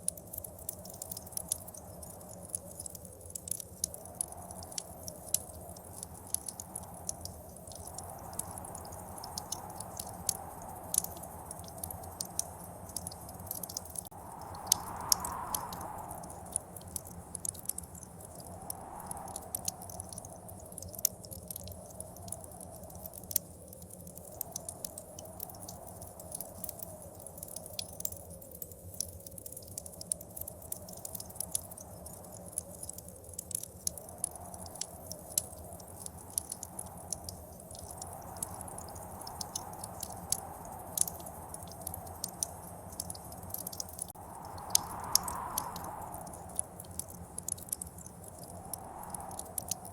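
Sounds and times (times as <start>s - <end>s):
wood fire crackling and popping: 0.0s - 49.9s
low steady rumble: 0.1s - 27.8s
howling blizzard wind: 4.0s - 20.8s, 34.0s - 49.9s.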